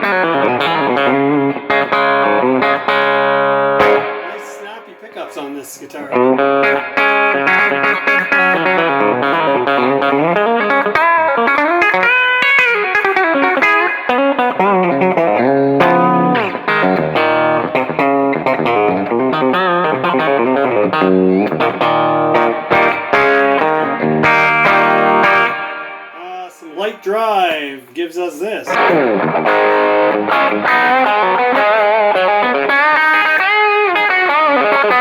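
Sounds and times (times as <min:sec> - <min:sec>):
clean electric guitar: 0:00.0 - 0:04.9, 0:06.1 - 0:26.2, 0:28.7 - 0:35.0.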